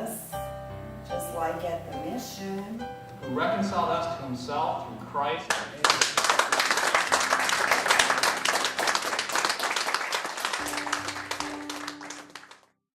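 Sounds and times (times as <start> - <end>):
crowd applause: 5.5 - 12.7.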